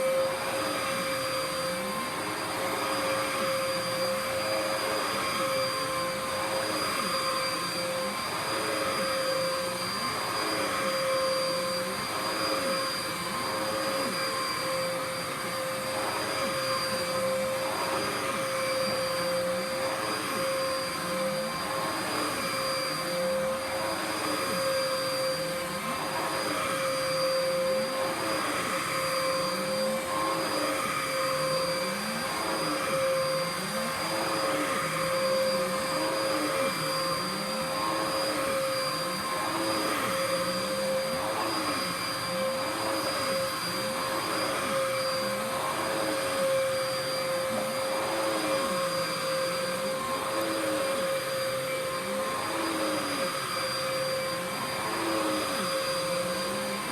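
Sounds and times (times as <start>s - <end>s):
vacuum cleaner motor whine: 0.0s - 56.9s.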